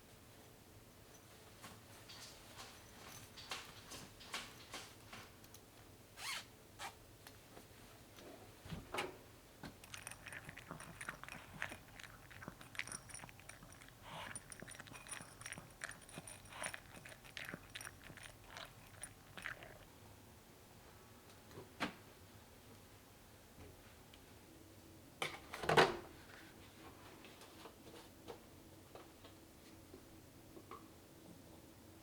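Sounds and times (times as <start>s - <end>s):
laundry rustling: 1.3s - 5.4s.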